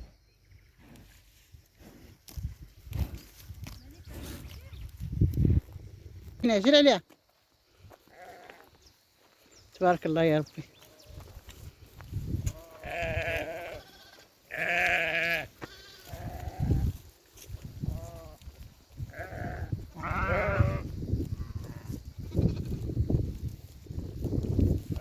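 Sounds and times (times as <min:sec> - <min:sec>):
sheep bleating: 0:08.1 - 0:08.7, 0:12.5 - 0:16.8, 0:17.9 - 0:18.4, 0:19.1 - 0:22.7.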